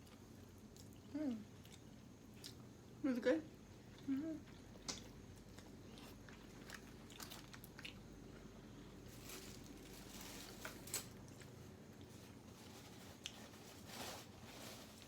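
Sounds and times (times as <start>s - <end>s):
person chewing food: 0.0s - 2.7s, 3.8s - 8.6s
small crunches: 4.8s - 8.0s, 9.0s - 15.0s.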